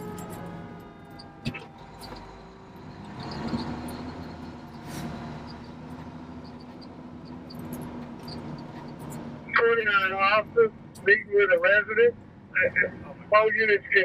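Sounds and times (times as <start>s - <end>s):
fire engine drone from inside cab: 0.0s - 14.0s.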